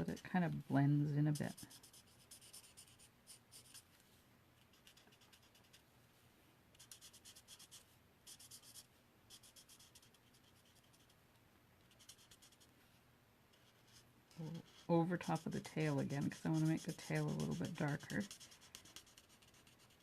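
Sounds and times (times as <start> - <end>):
marker scratching on cardstock: 1.3 - 3.8, 4.7 - 5.8, 6.8 - 11.1, 11.9 - 12.7, 13.6 - 20.0.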